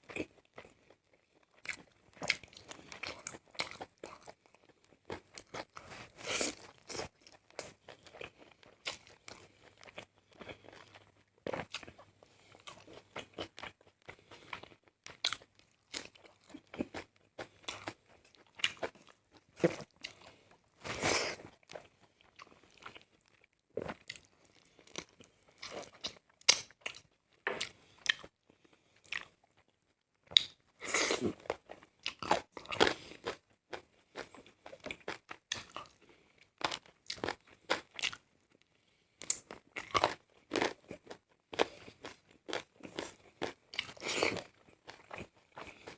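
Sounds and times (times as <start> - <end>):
crunchy bites and chewing: 30.3 - 38.2, 39.2 - 45.9.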